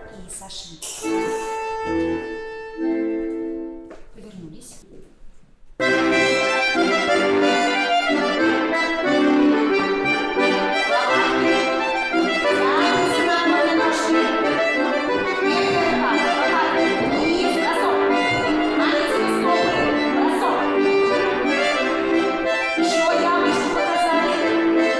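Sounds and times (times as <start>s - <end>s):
accordion folk-dance tune: 0.9s - 4.0s, 5.8s - 24.9s.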